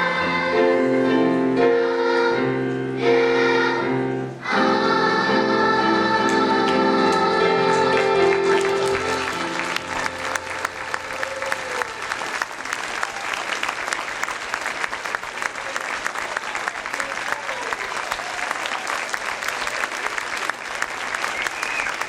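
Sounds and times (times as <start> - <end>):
children's song: 0.0 - 11.4
audience applause: 7.7 - 22.0.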